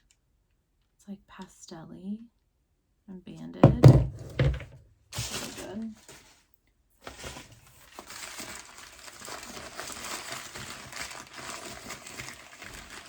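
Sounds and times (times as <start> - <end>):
packing material crinkling: 7.0 - 13.0.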